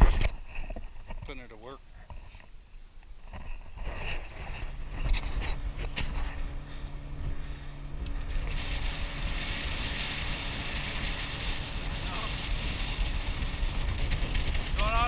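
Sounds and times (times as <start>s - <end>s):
boat engine humming: 0.4s - 15.0s
wind buffeting microphone: 3.1s - 15.0s.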